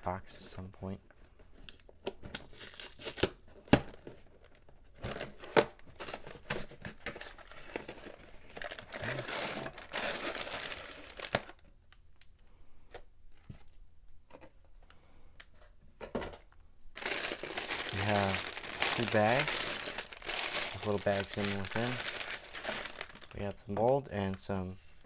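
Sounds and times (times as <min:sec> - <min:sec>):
plastic bags crinkling and tearing: 0:02.4 - 0:04.5, 0:05.1 - 0:11.6, 0:17.0 - 0:23.6.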